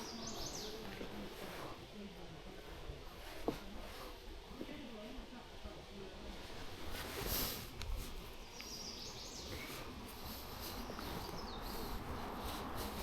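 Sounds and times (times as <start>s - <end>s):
songbird chirping: 0.0s - 1.3s, 8.3s - 13.0s
rustle: 0.0s - 13.0s.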